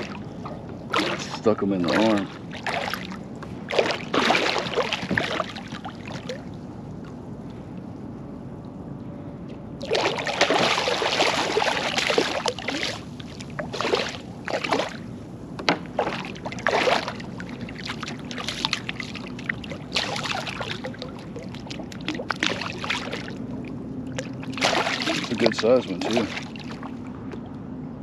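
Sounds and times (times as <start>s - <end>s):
water splashing and sloshing: 0.0s - 27.9s.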